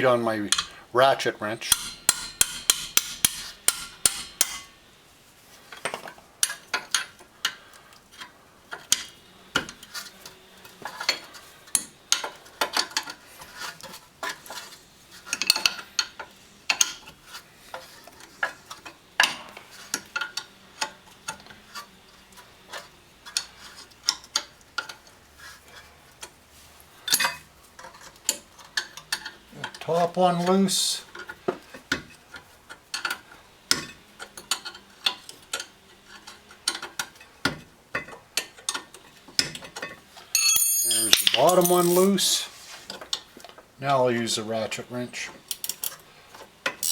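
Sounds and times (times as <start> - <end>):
hammer striking wrench: 0.5 - 0.8, 1.6 - 4.8, 40.4 - 42.1
metallic clinks and taps: 40.3 - 42.2.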